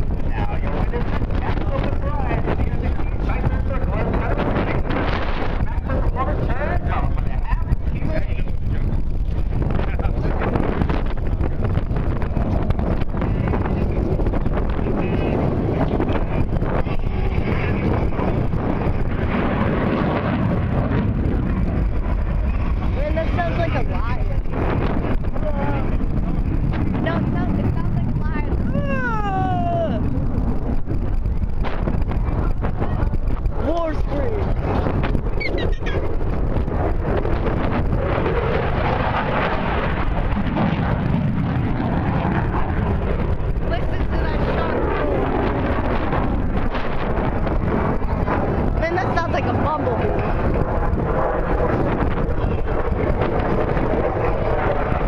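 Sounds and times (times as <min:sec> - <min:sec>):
jet engines roaring: 0:00.0 - 0:55.0
wind buffeting microphone: 0:00.0 - 0:55.0.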